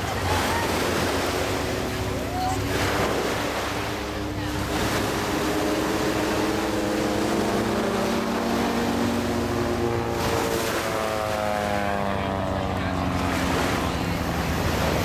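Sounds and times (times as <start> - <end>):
propeller airplane engine droning: 0.0 - 15.0
surf washing: 0.0 - 15.0.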